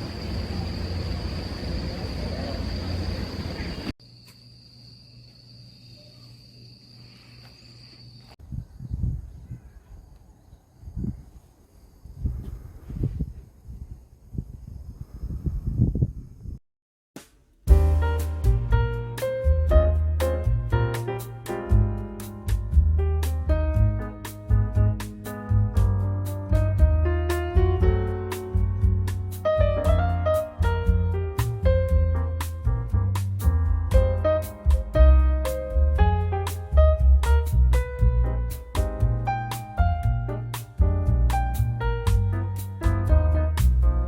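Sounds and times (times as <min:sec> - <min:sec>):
faint low hum: 0:00.0 - 0:03.9
insects trilling: 0:00.0 - 0:12.3
drum beat: 0:17.7 - 0:21.0
heavy bass line: 0:17.7 - 0:44.0
keyboard chords: 0:17.7 - 0:44.0.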